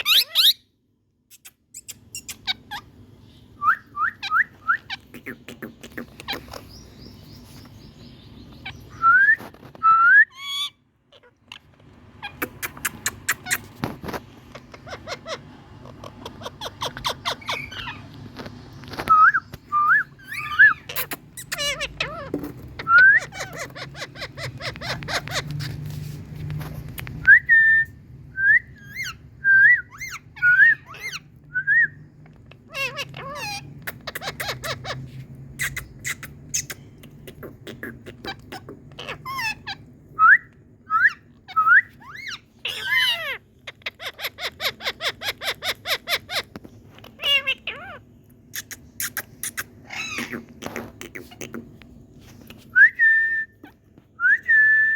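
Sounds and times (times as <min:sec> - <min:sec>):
parakeets whistling: 0:00.0 - 0:00.6, 0:03.5 - 0:26.3, 0:27.2 - 0:48.0, 0:48.6 - 0:51.6
parakeet screeches: 0:00.0 - 0:00.7, 0:10.3 - 0:19.0, 0:20.0 - 0:26.4, 0:29.8 - 0:31.3, 0:32.4 - 0:36.8, 0:37.7 - 0:39.9, 0:41.0 - 0:48.0, 0:48.6 - 0:51.6
parakeet clicking chatter: 0:01.3 - 0:03.0, 0:04.9 - 0:06.7, 0:11.2 - 0:13.8, 0:14.4 - 0:18.6, 0:20.2 - 0:25.8, 0:32.3 - 0:35.0, 0:42.1 - 0:51.8.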